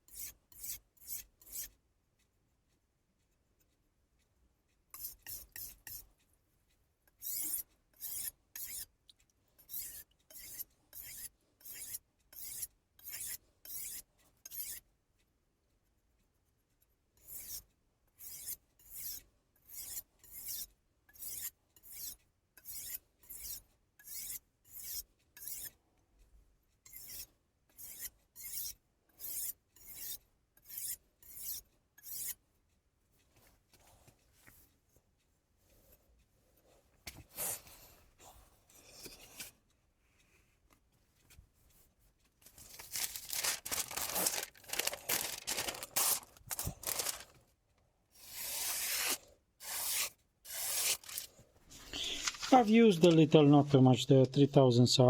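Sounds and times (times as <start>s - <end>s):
knife scraping on whetstone: 5.0s - 6.0s, 7.2s - 8.9s, 9.6s - 14.8s, 18.2s - 25.7s, 26.9s - 32.4s, 42.6s - 47.2s, 48.2s - 52.4s.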